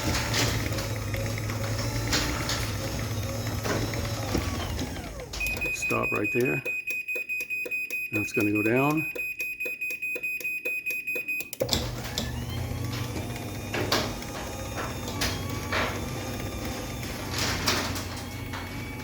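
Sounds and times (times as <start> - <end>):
chain-drive motor running: 0.0 - 6.6, 11.6 - 19.0
garage door opener beeping: 0.0 - 19.0
clicks and knocks of door mechanism: 11.6 - 19.0.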